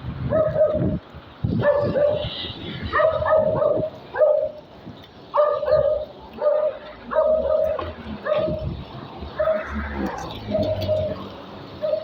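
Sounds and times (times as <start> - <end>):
wind buffeting microphone: 0.0 - 6.2, 7.2 - 11.8
dog barking: 0.3 - 0.8, 1.6 - 2.2, 2.9 - 4.6, 5.4 - 8.6, 9.4 - 9.7, 11.8 - 12.0.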